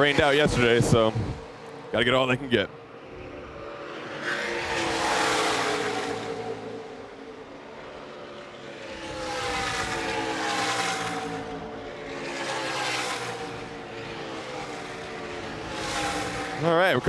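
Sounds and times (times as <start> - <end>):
racing truck engines passing: 0.0 - 17.0.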